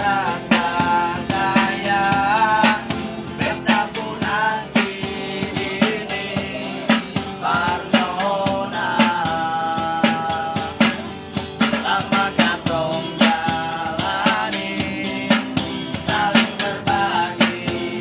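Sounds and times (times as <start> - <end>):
music with steady drum beat: 0.0 - 18.0
person singing: 0.0 - 18.0.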